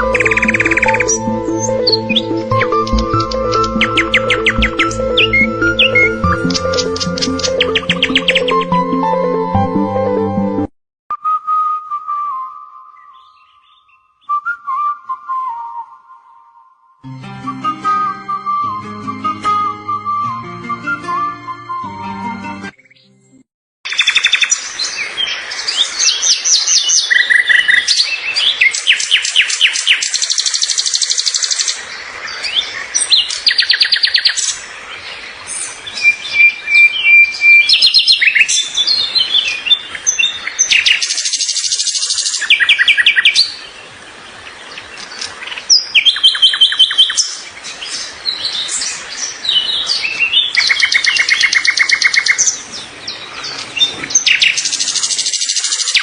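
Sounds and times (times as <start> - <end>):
songbird chirping and trilling: 0.0 - 10.2, 12.7 - 14.9, 23.9 - 56.0.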